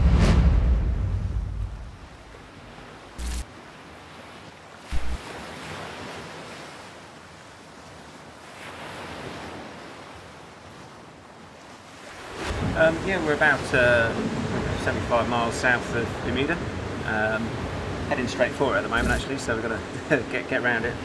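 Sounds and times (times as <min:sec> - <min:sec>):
water and wind hissing: 0:01.2 - 0:21.0.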